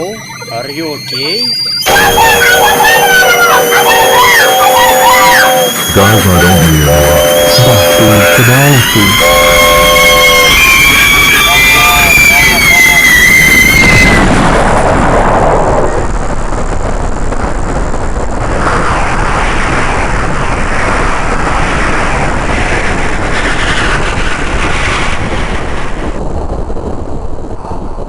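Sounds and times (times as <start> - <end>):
high whistle: 0.0 - 14.4
cartoon explosion roar: 0.0 - 28.0.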